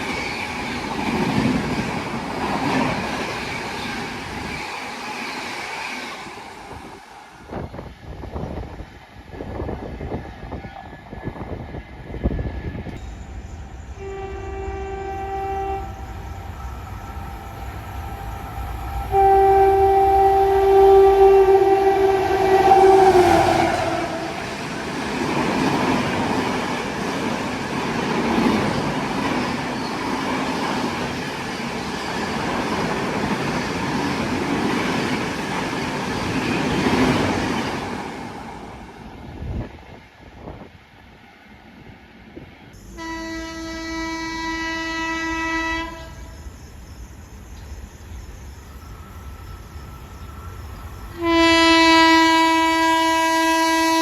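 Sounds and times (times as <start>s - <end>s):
train coaches rushing past: 0.0s - 54.0s
train horn blasts: 13.9s - 16.4s, 19.0s - 24.7s, 42.8s - 46.4s, 51.2s - 54.0s.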